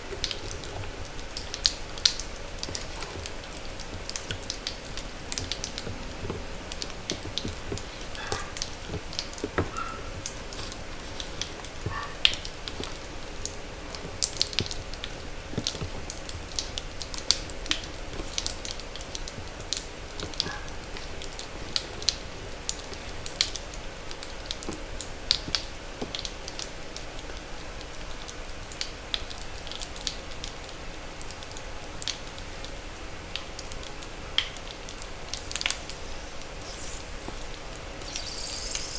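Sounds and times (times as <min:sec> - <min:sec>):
chalk crushing with pops and crackles: 0:35.4 - 0:38.9.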